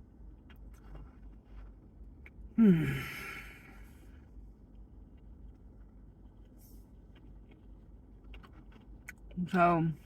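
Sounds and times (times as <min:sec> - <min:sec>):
woman sighing: 0:02.6 - 0:03.8.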